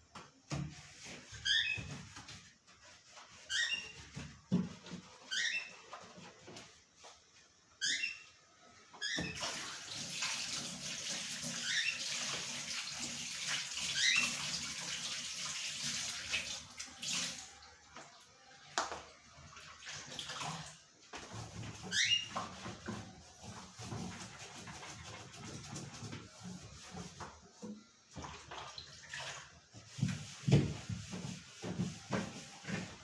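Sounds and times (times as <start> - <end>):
water running from tap: 9.2 - 18.1, 18.8 - 27.0.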